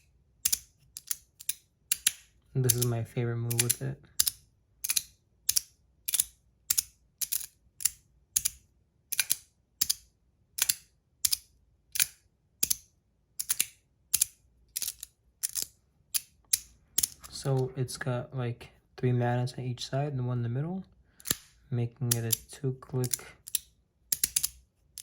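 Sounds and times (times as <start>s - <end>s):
magnetic fidget slider clicking: 23.0s - 25.0s.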